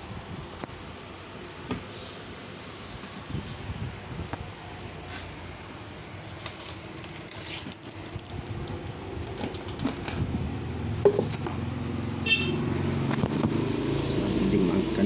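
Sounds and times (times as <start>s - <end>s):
steady background hum: 0.0s - 13.4s
small objects clicking and clinking: 6.4s - 10.2s
low engine hum: 10.1s - 15.0s.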